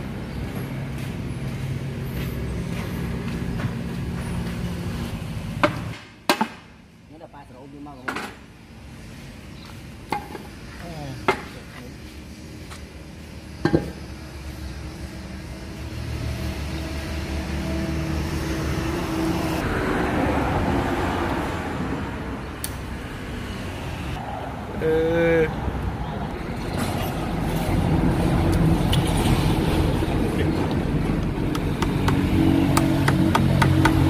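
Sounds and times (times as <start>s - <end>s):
vehicle passing: 13.9s - 34.0s.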